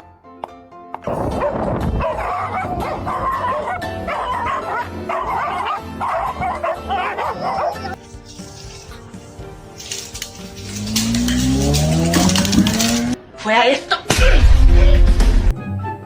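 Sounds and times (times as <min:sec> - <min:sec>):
background music: 0:00.0 - 0:16.0
dog barking and yipping: 0:01.0 - 0:08.0.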